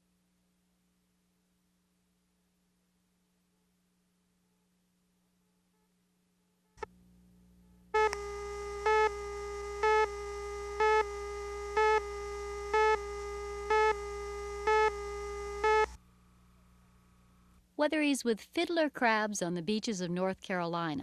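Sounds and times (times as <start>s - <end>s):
low hum: 6.8s - 17.5s
click: 8.0s - 8.2s
buzzy electronic beeping tone: 8.0s - 16.0s.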